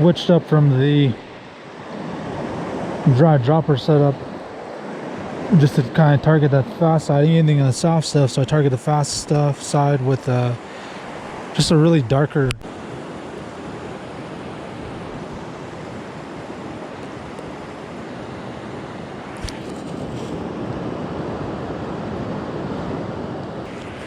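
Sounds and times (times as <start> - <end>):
fast-flowing stream rushing: 0.0 - 19.8
brief click: 19.4 - 19.8.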